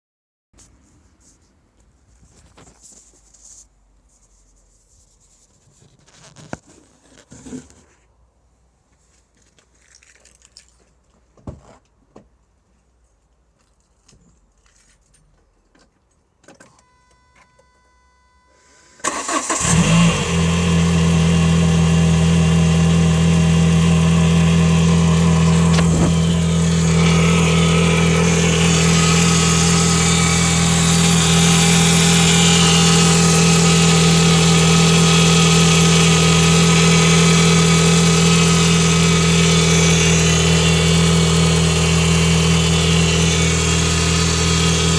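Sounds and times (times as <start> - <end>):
car engine starting and idling: 18.6 - 44.9.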